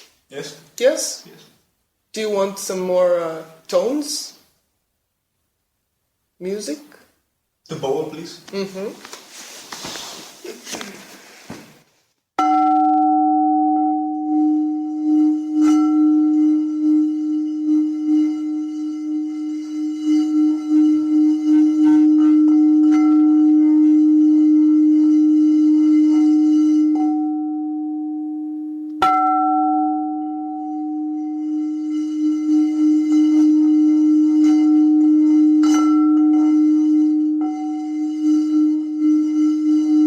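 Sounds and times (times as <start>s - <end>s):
singing bowl struck: 12.4s - 25.4s, 26.1s - 38.8s
singing bowl humming: 12.4s - 40.0s.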